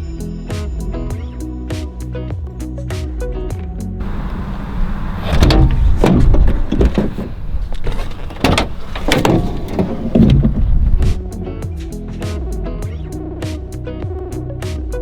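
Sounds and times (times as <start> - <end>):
knocks and bangs: 4.0 - 11.2.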